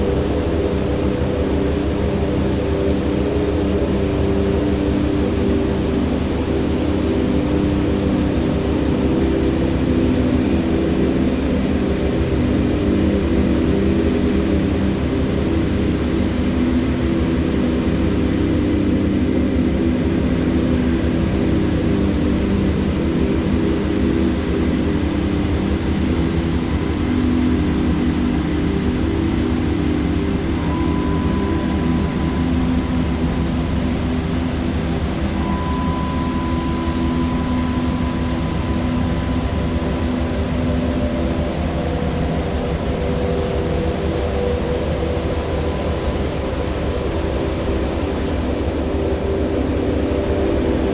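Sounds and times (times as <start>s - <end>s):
low hum: 15.4s - 50.9s.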